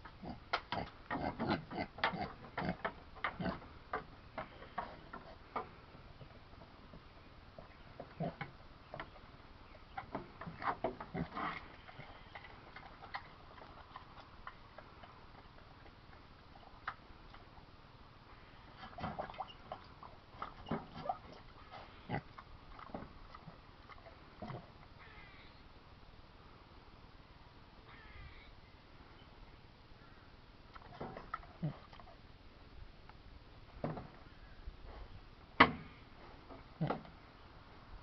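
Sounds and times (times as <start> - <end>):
pig smacking and chomping: 10.0 - 17.6.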